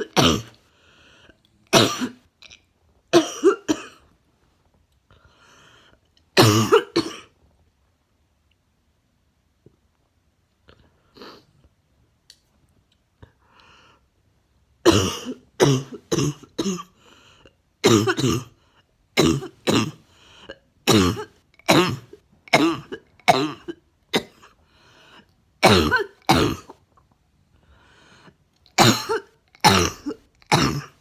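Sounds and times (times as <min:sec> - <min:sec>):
woman coughing: 0:00.0 - 0:00.6, 0:01.8 - 0:02.2, 0:03.2 - 0:04.0, 0:06.4 - 0:07.3, 0:14.9 - 0:16.9, 0:17.8 - 0:18.5, 0:19.2 - 0:20.0, 0:20.9 - 0:24.5, 0:25.6 - 0:26.8, 0:28.8 - 0:31.0
faint breaths: 0:00.6 - 0:01.5, 0:05.1 - 0:06.1, 0:16.9 - 0:17.6, 0:20.0 - 0:20.7, 0:24.5 - 0:25.4, 0:27.5 - 0:28.6.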